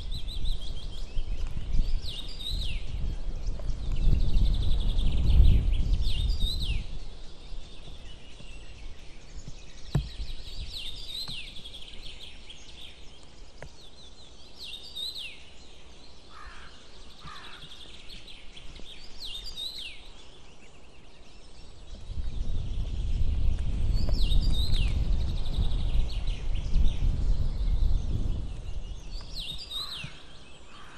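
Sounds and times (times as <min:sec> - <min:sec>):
wind on microphone: 0:00.0 - 0:13.7, 0:21.4 - 0:30.4
songbird singing: 0:00.0 - 0:30.9.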